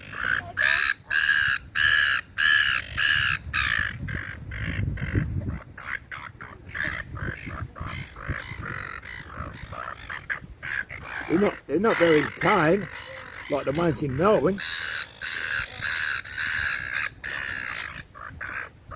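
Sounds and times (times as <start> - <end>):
seagulls squawking: 0.0 - 18.9.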